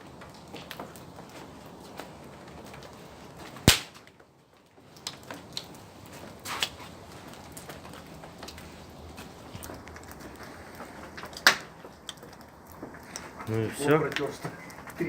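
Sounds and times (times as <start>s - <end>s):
loud sharp crack: 3.6s - 4.1s.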